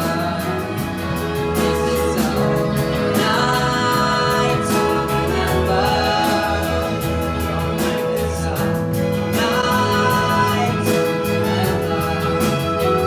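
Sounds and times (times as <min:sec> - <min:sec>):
band and orchestra playing: 0:00.0 - 0:13.0
person singing: 0:00.0 - 0:13.0.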